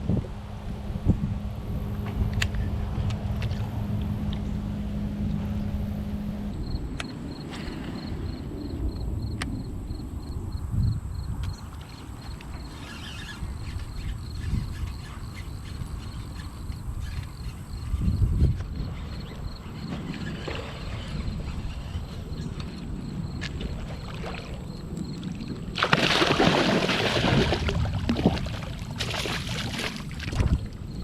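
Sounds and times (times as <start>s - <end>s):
rumbling handling noise: 0.0s - 8.0s
low hum: 0.0s - 25.4s
insect chirping: 5.6s - 31.0s.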